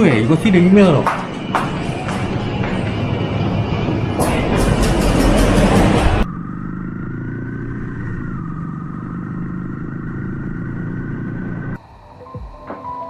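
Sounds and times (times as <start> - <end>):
engine running: 0.0 - 12.8
loud rushing noise: 0.4 - 6.3.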